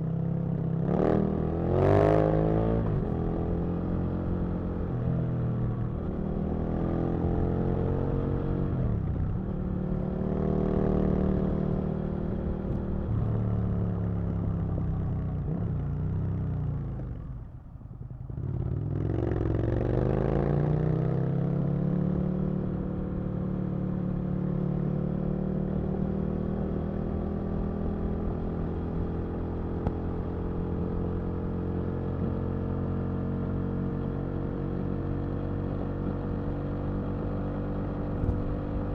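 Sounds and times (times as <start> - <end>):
motorcycle engine revving: 34.5 - 38.9.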